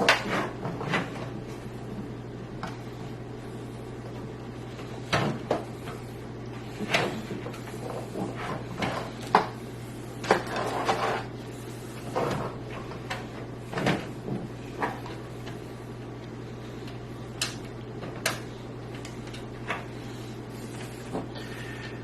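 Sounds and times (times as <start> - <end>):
steady low hum: 0.0 - 22.0
knocks and rattles of computer parts: 5.0 - 5.8, 12.1 - 15.6.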